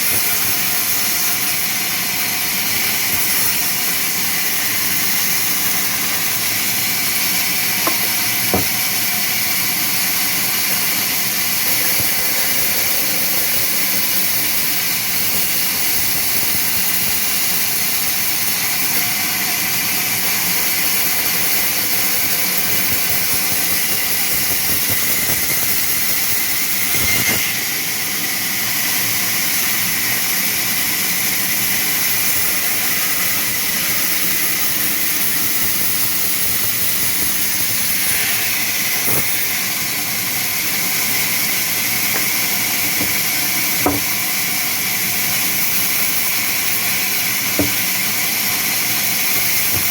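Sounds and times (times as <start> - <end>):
sawmill machinery hissing: 0.0 - 49.9
brief knock: 7.9 - 8.8.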